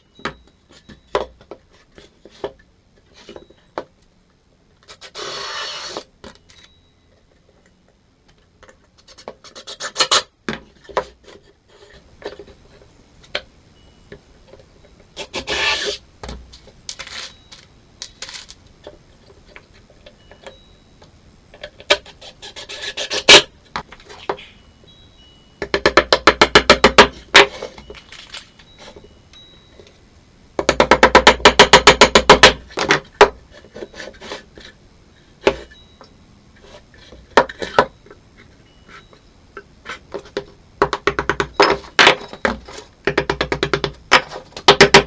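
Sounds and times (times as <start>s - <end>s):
scraping strokes on wood: 15.2s - 16.0s, 21.9s - 23.5s.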